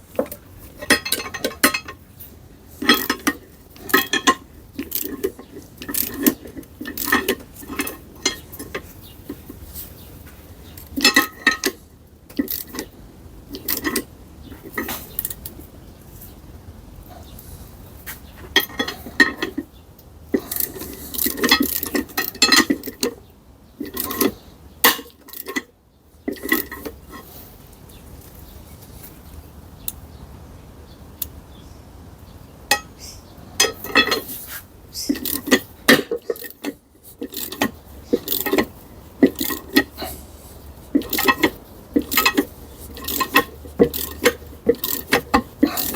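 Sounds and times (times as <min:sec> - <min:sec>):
metal tools clinking and clattering: 0:00.1 - 0:09.9, 0:10.8 - 0:15.5, 0:18.4 - 0:19.7, 0:20.3 - 0:23.2, 0:23.8 - 0:25.7, 0:26.3 - 0:27.4, 0:32.7 - 0:33.0, 0:33.6 - 0:45.9.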